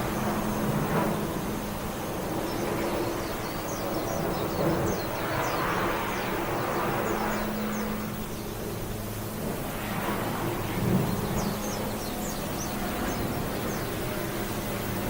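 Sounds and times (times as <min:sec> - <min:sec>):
steady rushing noise: 0:00.0 - 0:15.0.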